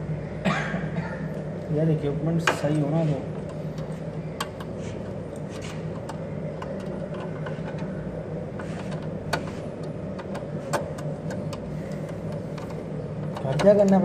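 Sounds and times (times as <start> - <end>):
low hum: 0.0 - 14.0.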